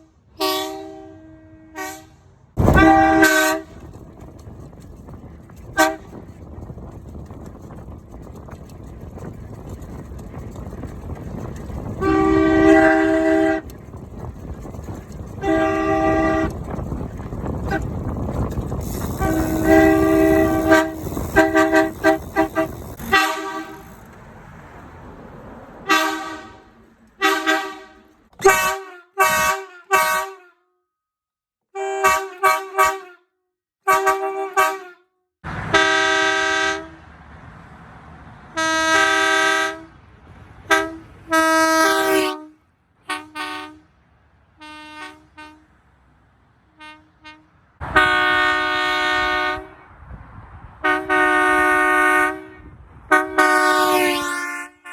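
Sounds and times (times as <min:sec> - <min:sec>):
truck horn blasts: 0:00.0 - 0:04.6, 0:05.6 - 0:24.1, 0:25.8 - 0:30.7, 0:31.7 - 0:35.1, 0:35.7 - 0:37.1, 0:38.6 - 0:40.0, 0:40.6 - 0:43.9, 0:44.6 - 0:45.8, 0:46.7 - 0:49.9, 0:50.8 - 0:54.9
background rumble: 0:02.6 - 0:28.5.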